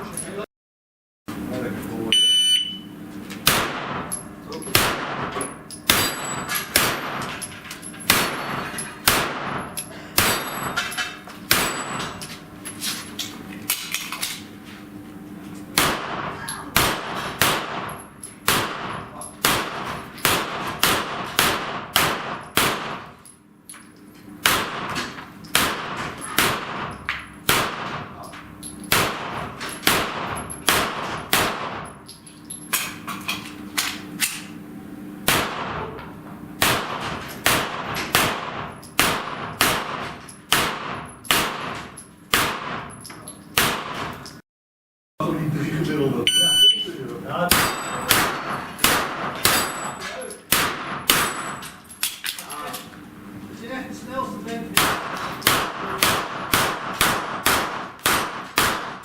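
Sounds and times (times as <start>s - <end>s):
bullets clanging on steel: 3.5s - 14.4s, 15.8s - 34.6s, 37.0s - 44.4s, 47.5s - 52.9s
rapid gunshots: 4.8s - 6.1s, 6.8s - 7.3s, 9.1s - 9.6s, 15.8s - 17.9s, 18.5s - 23.1s, 24.4s - 25.0s, 25.6s - 26.9s, 27.5s - 28.1s, 28.9s - 31.8s, 36.6s - 42.9s, 43.6s - 44.1s, 47.5s - 49.6s, 54.8s - 59.0s.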